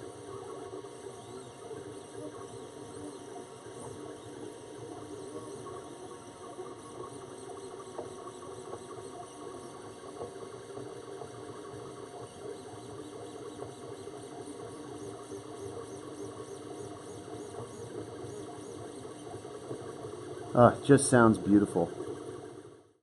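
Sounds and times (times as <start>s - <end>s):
printer stepper motors whirring: 0.0s - 23.0s.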